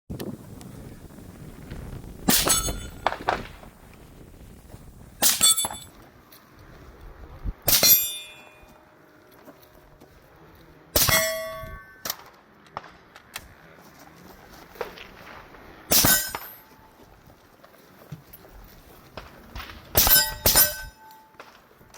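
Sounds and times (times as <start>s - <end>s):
metal clangs ringing: 2.3s - 3.0s, 5.2s - 6.0s, 7.7s - 8.7s, 11.0s - 12.1s, 15.9s - 16.9s, 20.0s - 21.4s.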